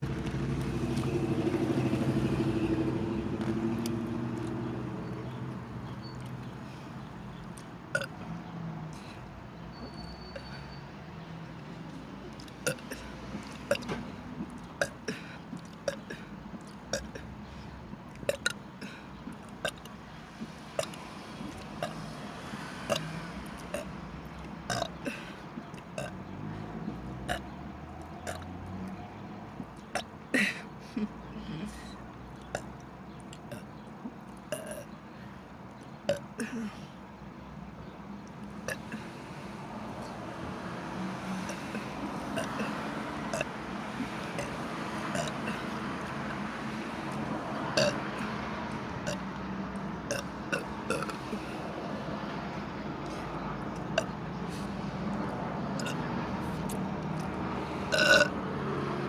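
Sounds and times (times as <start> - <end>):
woman burping: 7.9 - 8.1, 16.9 - 17.3, 24.7 - 25.3, 30.0 - 31.1, 34.5 - 34.9, 36.1 - 36.8, 57.9 - 58.3
long low burp: 7.9 - 8.2, 12.6 - 14.0, 16.9 - 17.3, 18.3 - 19.0, 24.7 - 25.3, 34.5 - 34.9, 44.4 - 45.7, 47.8 - 48.2, 49.0 - 49.2, 57.9 - 58.4.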